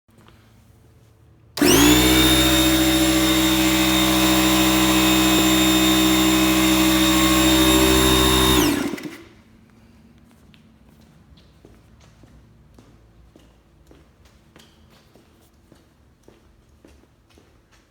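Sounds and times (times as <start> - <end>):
air compressor motor hum: 1.6 - 9.4.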